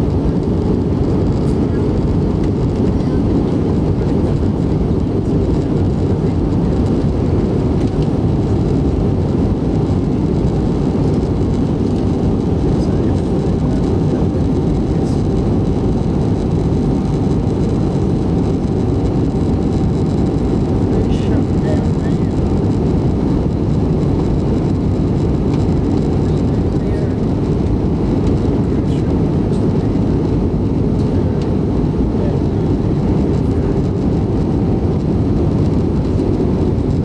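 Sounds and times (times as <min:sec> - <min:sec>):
jet airliner cabin noise: 0:00.0 - 0:37.0.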